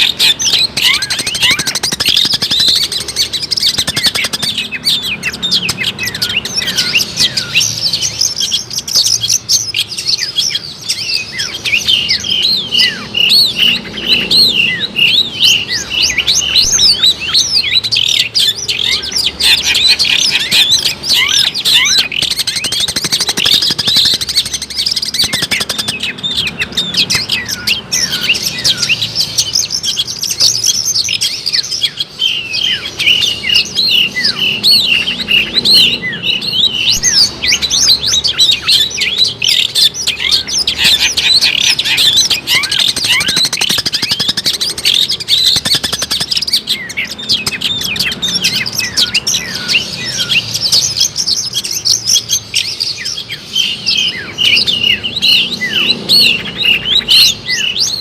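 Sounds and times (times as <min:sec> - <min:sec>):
bird chattering song: 0:00.0 - 0:58.0.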